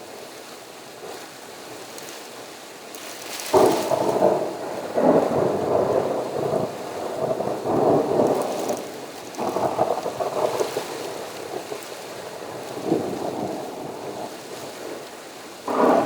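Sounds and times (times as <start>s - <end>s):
steady rain: 0.0s - 16.0s
thunder rumbling: 3.1s - 16.0s.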